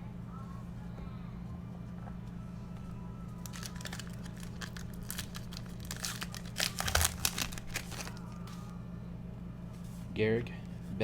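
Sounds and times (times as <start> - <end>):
wrapper crinkling and tearing: 3.4 - 8.7.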